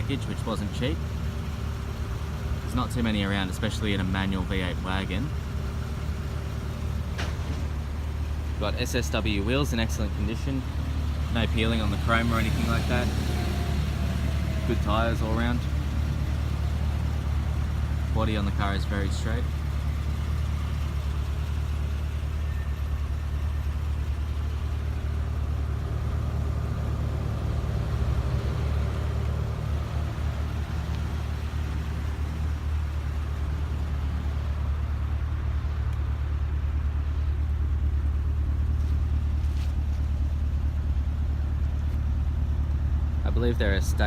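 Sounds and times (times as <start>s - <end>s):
car engine idling: 0.0s - 44.0s.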